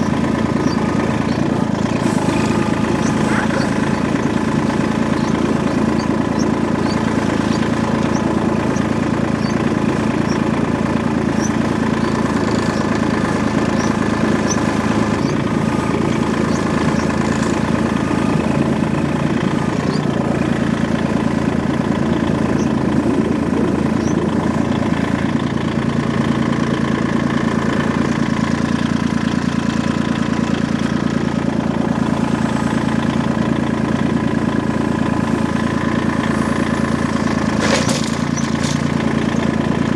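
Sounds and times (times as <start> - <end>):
engine idling: 0.0 - 39.9.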